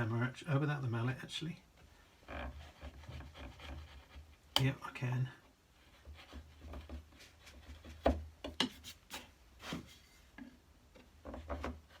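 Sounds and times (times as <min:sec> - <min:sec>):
chisel scraping wood: 0:02.0 - 0:04.7, 0:11.0 - 0:12.0.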